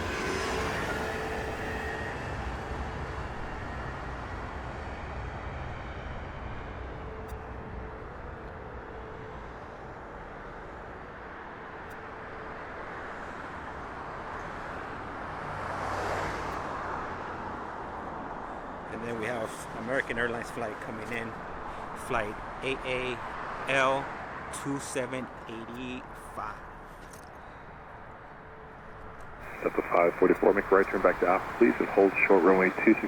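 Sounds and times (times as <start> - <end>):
distant jet airliner engines: 0.0 - 33.0.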